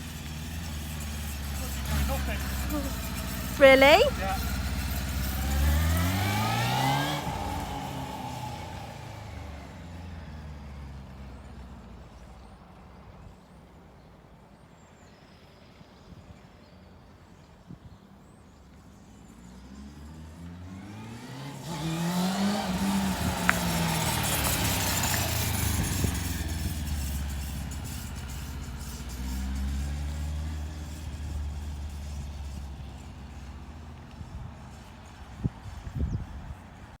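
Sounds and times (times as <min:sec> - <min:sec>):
motorcycle engine running: 0:00.0 - 0:11.9, 0:20.9 - 0:36.6.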